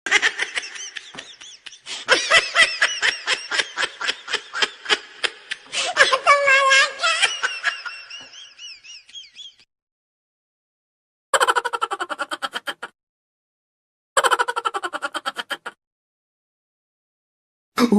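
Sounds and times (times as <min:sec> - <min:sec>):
laughter in bursts: 0:00.1 - 0:09.7, 0:11.4 - 0:13.0, 0:14.2 - 0:15.8.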